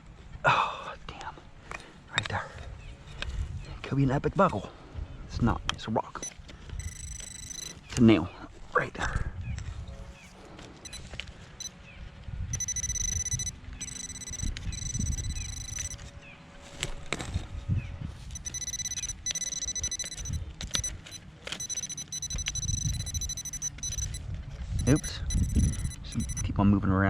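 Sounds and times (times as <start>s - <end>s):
pinpointer high tone: 6.2s - 7.8s, 12.5s - 16.0s, 18.3s - 26.5s.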